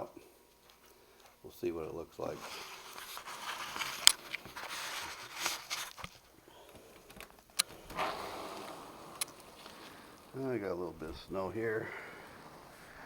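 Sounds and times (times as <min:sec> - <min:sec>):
crunching and rustling handling: 0:02.2 - 0:13.0
footsteps in snow: 0:07.8 - 0:13.0.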